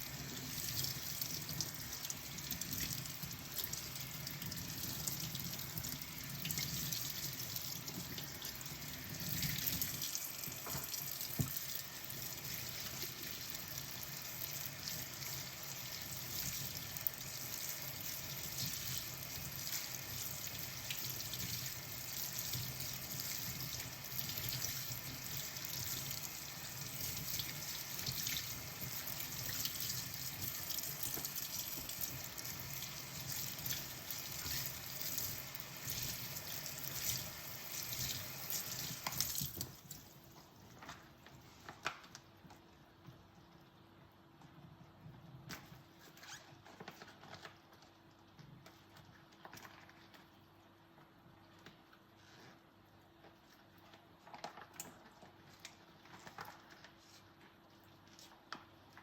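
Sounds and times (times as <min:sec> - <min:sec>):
tap running into sink: 0:10.5 - 0:11.7.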